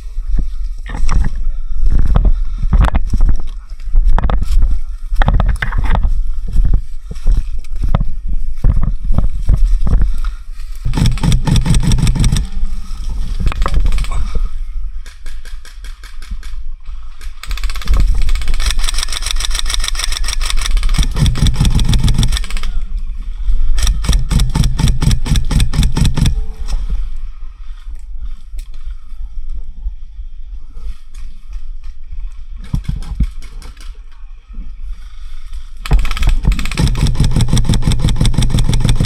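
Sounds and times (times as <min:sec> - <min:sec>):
airsoft guns firing rapidly: 0:10.9 - 0:12.6, 0:17.4 - 0:22.8, 0:23.8 - 0:26.5, 0:35.9 - 0:39.0.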